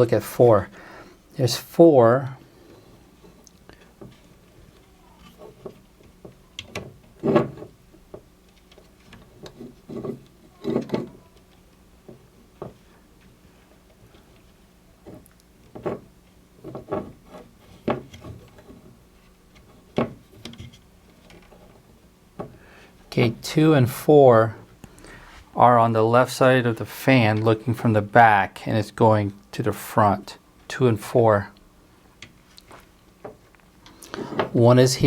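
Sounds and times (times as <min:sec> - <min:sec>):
faint steady hum: 0:00.0 - 0:35.0
knocks and taps of handling: 0:12.0 - 0:12.8.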